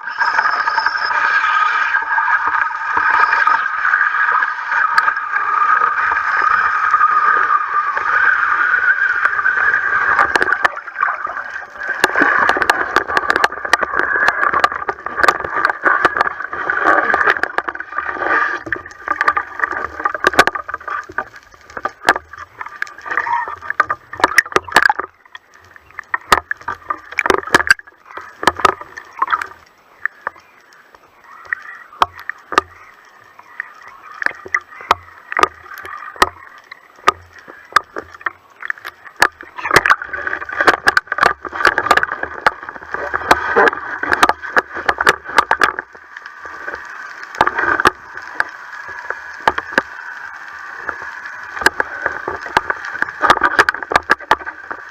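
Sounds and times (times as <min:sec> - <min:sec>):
underwater droning hum: 0:00.0 - 0:54.9
underwater water noise: 0:00.0 - 0:54.9
sharp clicks and knocks: 0:10.1 - 0:30.6, 0:31.4 - 0:50.0, 0:50.8 - 0:54.9.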